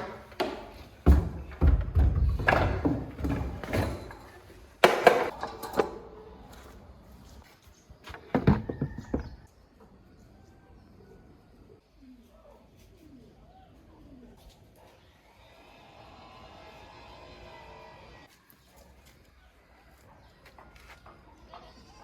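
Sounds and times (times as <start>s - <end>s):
hard objects knocking and clattering: 0.0s - 6.0s, 8.2s - 9.5s.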